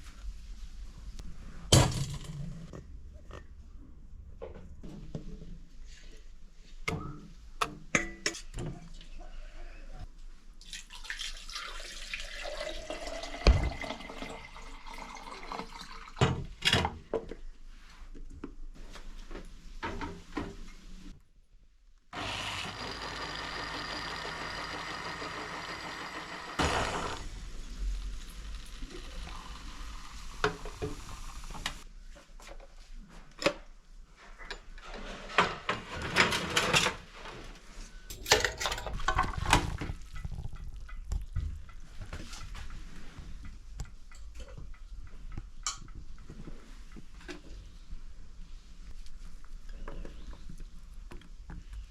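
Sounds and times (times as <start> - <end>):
pots and utensils clinking: 7.7 - 8.6, 38.1 - 41.6.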